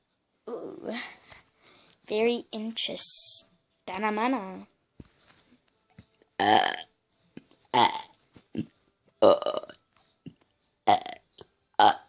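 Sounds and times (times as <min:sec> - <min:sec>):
person making fake burps: 0:06.4 - 0:06.9, 0:07.7 - 0:09.8, 0:10.9 - 0:11.2, 0:11.8 - 0:12.0.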